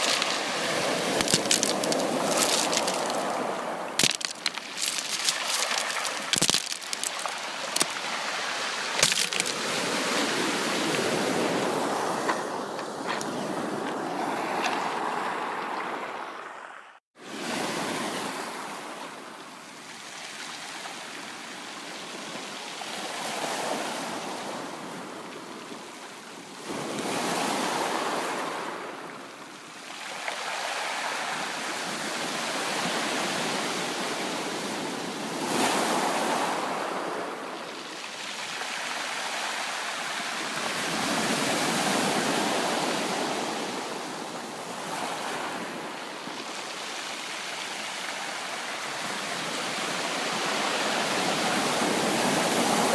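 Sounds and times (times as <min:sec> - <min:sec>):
ocean surf breaking: 0:00.0 - 0:18.8.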